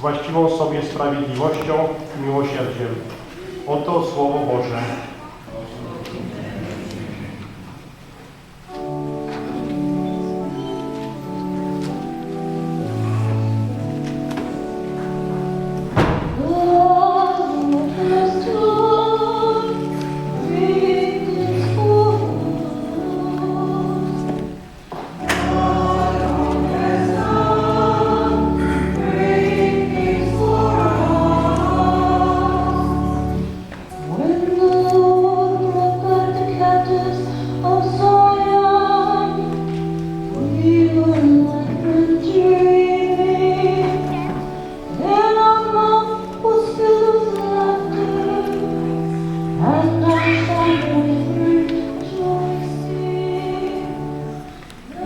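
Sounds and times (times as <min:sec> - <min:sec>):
organ chords: 0:06.0 - 0:55.0
choir singing: 0:16.4 - 0:24.5, 0:25.1 - 0:39.5, 0:45.0 - 0:55.0.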